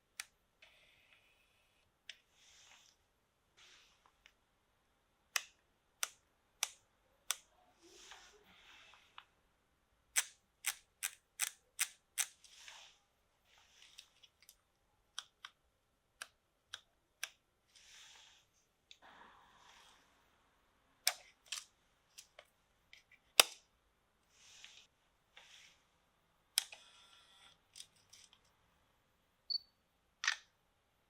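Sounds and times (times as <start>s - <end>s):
soft hissing: 2.2s - 4.2s, 12.4s - 14.2s, 17.7s - 20.5s, 24.3s - 26.0s.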